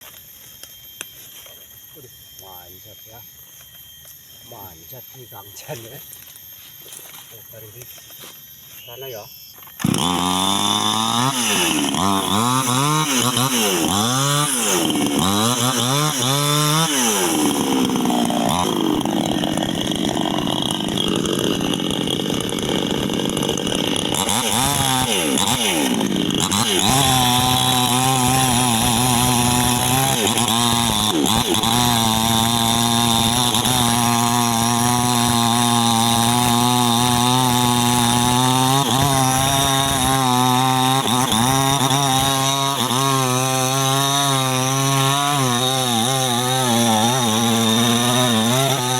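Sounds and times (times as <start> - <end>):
chainsaw revving and sawing: 9.7 - 48.9.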